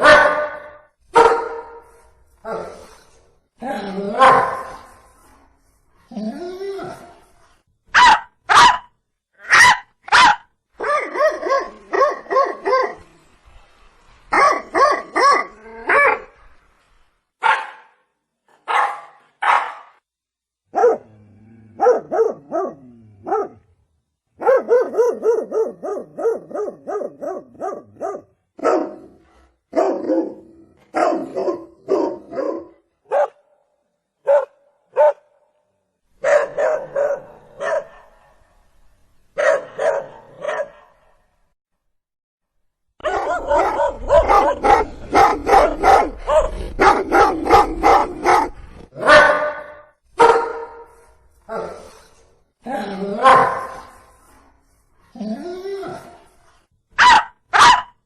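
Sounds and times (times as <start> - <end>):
dog barking: 0.0 - 1.9, 4.2 - 4.8, 7.9 - 13.0, 14.3 - 16.3, 17.4 - 18.0, 18.6 - 20.0, 20.7 - 21.1, 21.8 - 23.6, 24.4 - 33.5, 34.2 - 35.3, 36.2 - 38.2, 39.4 - 41.0, 43.0 - 51.0, 53.2 - 53.9, 57.0 - 58.0.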